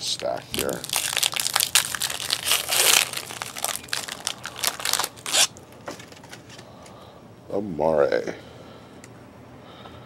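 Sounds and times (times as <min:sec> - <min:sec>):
crinkling wrapper being opened: 0:00.5 - 0:06.4.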